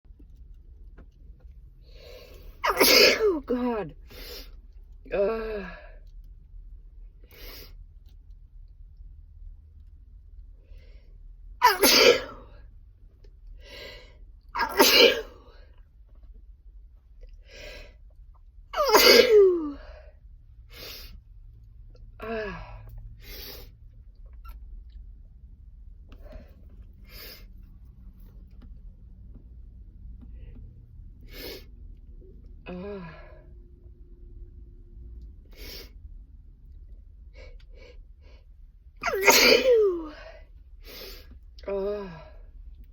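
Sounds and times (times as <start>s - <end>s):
short breaths: 1.8s - 2.6s
person sneezing: 2.6s - 3.6s, 11.6s - 12.4s, 14.6s - 15.4s, 18.8s - 19.8s, 39.0s - 40.2s.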